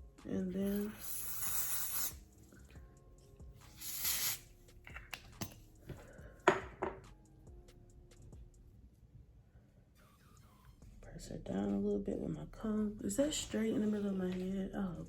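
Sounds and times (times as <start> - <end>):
aerosol can spraying: 0.6 - 2.2, 3.6 - 4.5.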